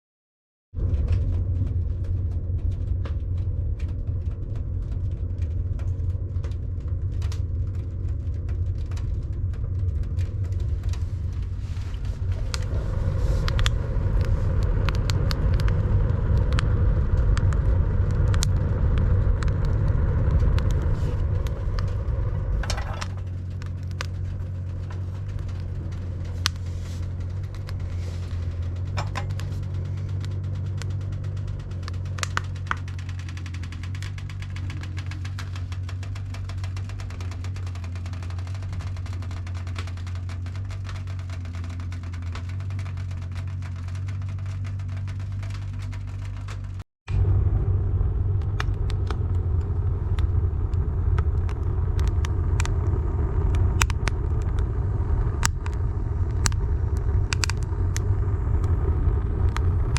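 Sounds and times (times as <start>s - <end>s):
machine engine running: 0.8s - 59.9s
metallic clanks and knocks: 28.8s - 29.5s.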